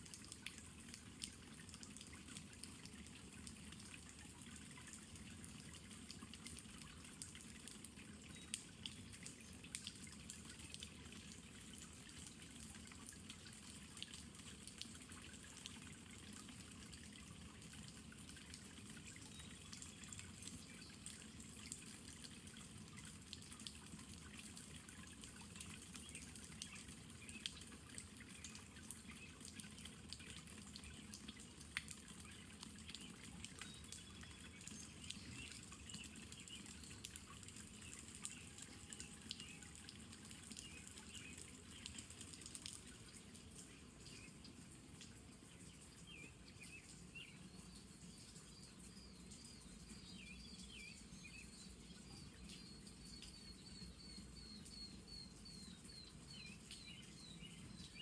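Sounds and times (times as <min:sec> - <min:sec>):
rain drops dripping: 0:00.0 - 0:58.0
small birds chirping: 0:32.2 - 0:39.8, 0:45.4 - 0:58.0.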